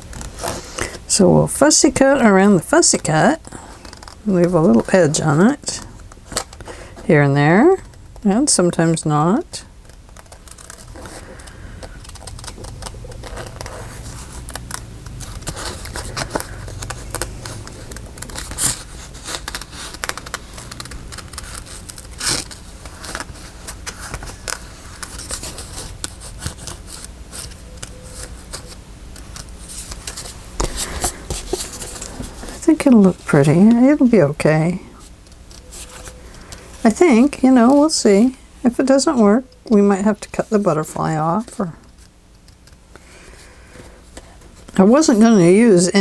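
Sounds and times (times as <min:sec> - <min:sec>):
scissors snipping paper: 0:09.9 - 0:32.4.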